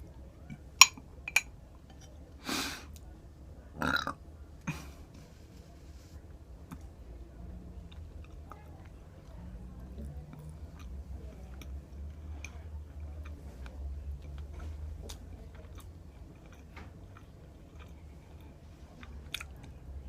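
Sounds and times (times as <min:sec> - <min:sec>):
steady low hum: 0:00.0 - 0:20.0
close-up chewing of food: 0:07.6 - 0:20.0.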